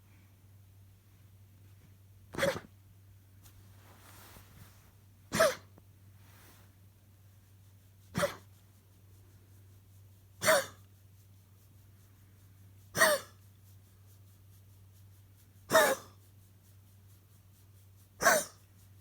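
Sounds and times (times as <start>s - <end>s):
dog coughing: 2.4s - 2.7s, 5.3s - 5.7s, 8.1s - 8.5s, 10.4s - 10.8s, 12.9s - 13.4s, 15.7s - 16.2s, 18.2s - 18.6s.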